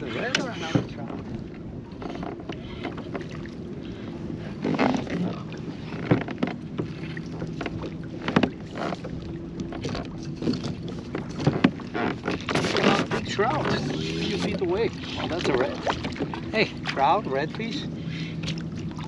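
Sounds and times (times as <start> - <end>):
knocks against kayak: 7.5 - 8.7, 9.7 - 13.8.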